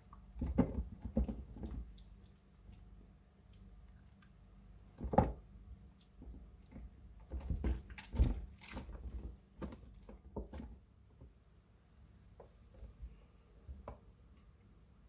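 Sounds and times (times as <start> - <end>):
wet soap squishing and crackling: 0.1 - 10.5.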